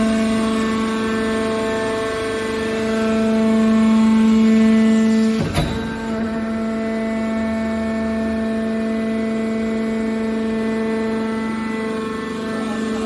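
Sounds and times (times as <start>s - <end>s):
hydraulic machine humming: 2.2s - 13.0s.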